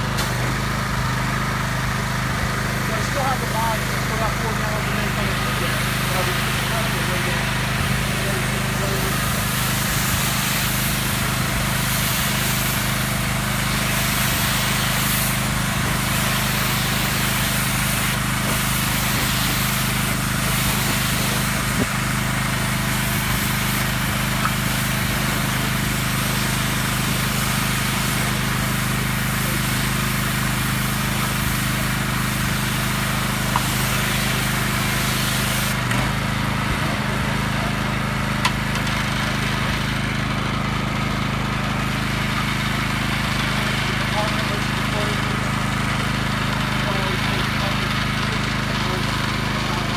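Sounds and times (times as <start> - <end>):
pressure washer engine hum: 0.0 - 49.9
hiss of water spray: 3.0 - 36.0.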